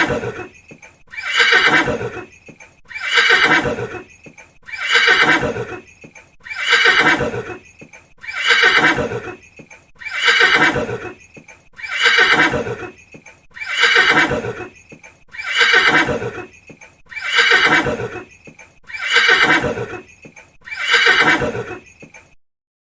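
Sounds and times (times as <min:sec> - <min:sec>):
horse whinnying: 0:00.0 - 0:07.6, 0:08.2 - 0:11.2, 0:11.8 - 0:22.3.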